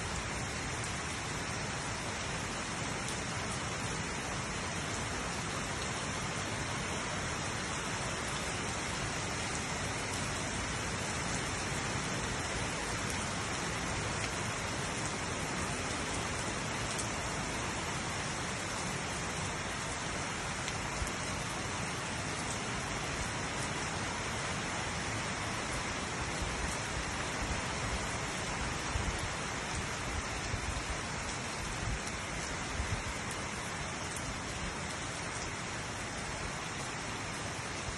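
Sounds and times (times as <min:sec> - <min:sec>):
steady rain falling: 0:00.0 - 0:37.9
raindrop ticks: 0:34.0 - 0:34.3.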